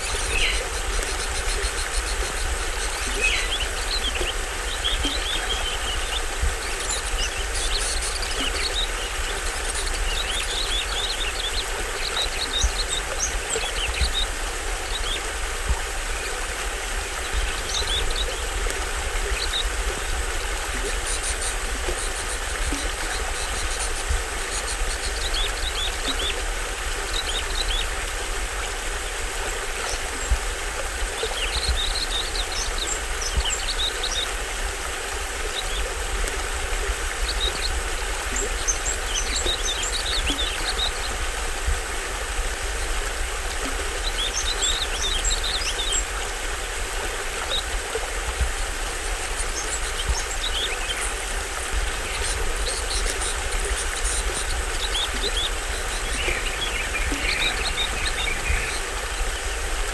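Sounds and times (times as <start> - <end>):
birds chirping: 0.0 - 28.2, 35.4 - 41.9, 49.3 - 59.9
small waterfall rushing: 0.0 - 59.9.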